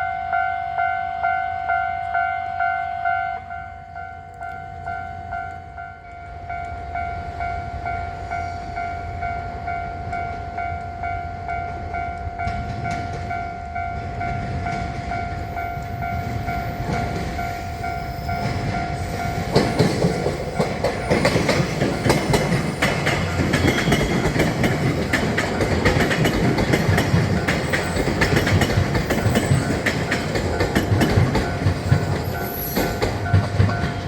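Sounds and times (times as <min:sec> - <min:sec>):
railroad crossing bell ringing: 0:00.0 - 0:34.0
train wheels clacking on rail joints: 0:11.5 - 0:34.0.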